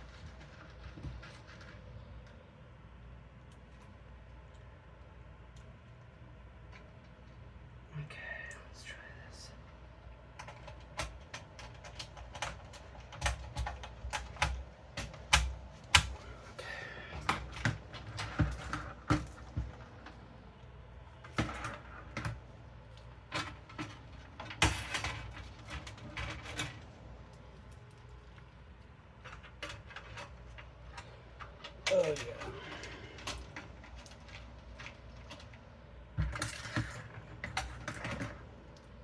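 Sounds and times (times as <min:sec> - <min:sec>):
hardware clicking inside computer case: 0:10.1 - 0:20.3, 0:21.0 - 0:39.0.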